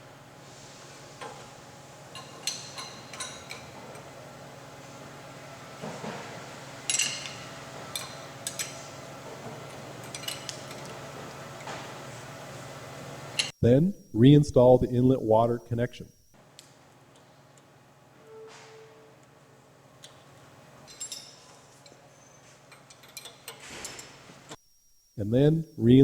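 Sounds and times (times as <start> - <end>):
faint steady hum: 0.0 - 26.0
metal wrenches clinking: 2.1 - 4.1, 6.9 - 8.9, 9.7 - 11.0, 20.9 - 24.2.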